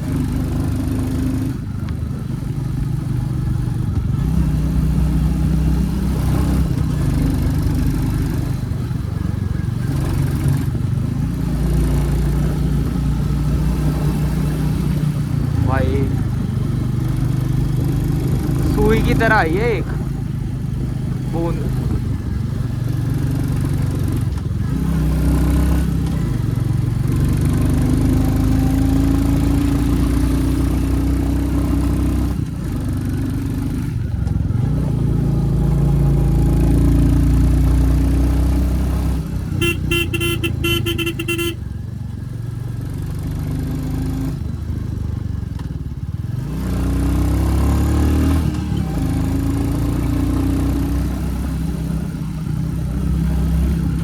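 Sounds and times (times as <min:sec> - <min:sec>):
motorcycle engine accelerating: 0:00.0 - 0:54.0
motorcycle horn: 0:39.5 - 0:41.7.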